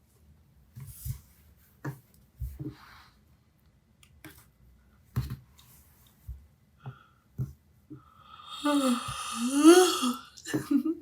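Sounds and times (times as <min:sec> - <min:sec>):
woman yawning: 0:08.4 - 0:10.7.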